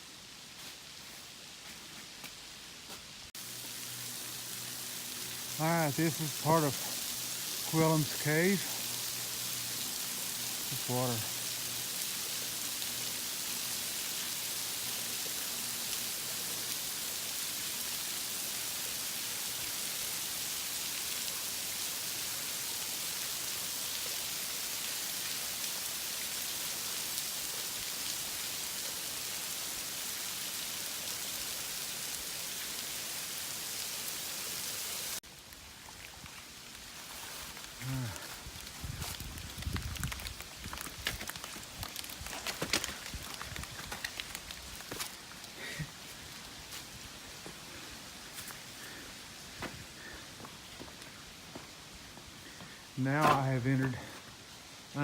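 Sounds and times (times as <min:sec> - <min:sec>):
water dripping in a cave: 0:35.3 - 0:46.7.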